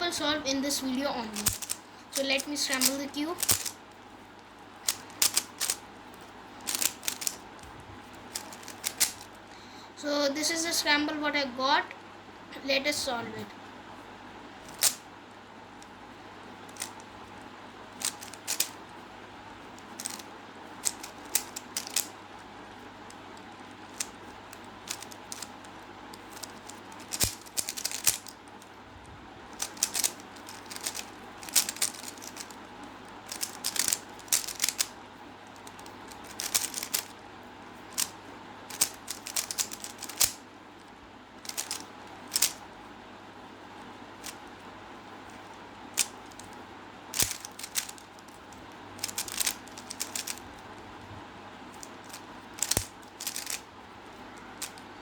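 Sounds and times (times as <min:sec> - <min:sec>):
puzzle cube clicking turns: 0:01.4 - 0:03.8, 0:04.8 - 0:07.6, 0:08.2 - 0:09.4, 0:14.6 - 0:15.0, 0:16.7 - 0:17.1, 0:17.9 - 0:18.8, 0:19.8 - 0:22.1, 0:23.4 - 0:28.6, 0:29.5 - 0:35.0, 0:35.6 - 0:37.2, 0:37.9 - 0:40.4, 0:41.4 - 0:42.6, 0:46.0 - 0:50.6, 0:51.7 - 0:53.6, 0:54.5 - 0:54.8.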